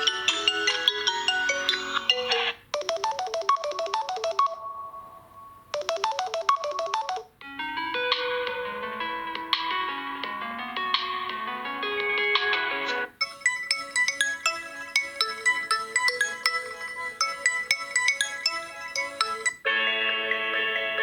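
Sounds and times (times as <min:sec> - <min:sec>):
phone ringtones: 0:00.0 - 0:07.3, 0:13.2 - 0:19.6
short ringtone melody: 0:00.0 - 0:07.3, 0:13.2 - 0:19.6.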